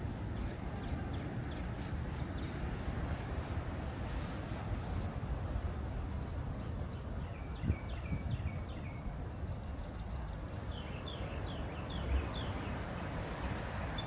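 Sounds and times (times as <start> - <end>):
songbird singing: 7.2 - 12.8.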